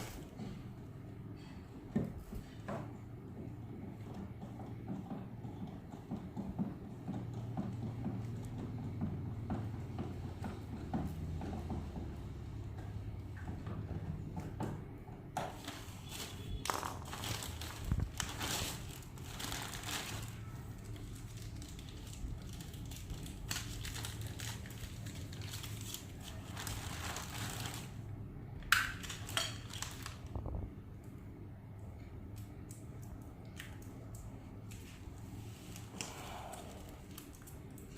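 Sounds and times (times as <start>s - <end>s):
packaging crinkling: 16.0s - 28.0s, 28.8s - 30.6s.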